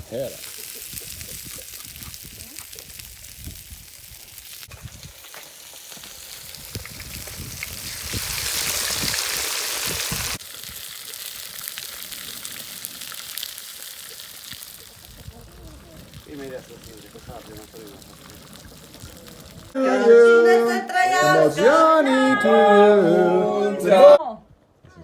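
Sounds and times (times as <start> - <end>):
pork sizzling and crackling: 0.0 - 19.8.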